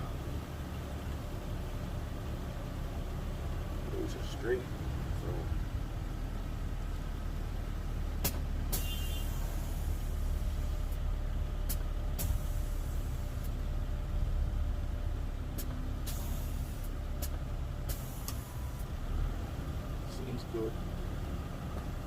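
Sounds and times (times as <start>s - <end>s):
car engine idling: 0.0s - 22.0s
air hissing: 16.0s - 18.8s.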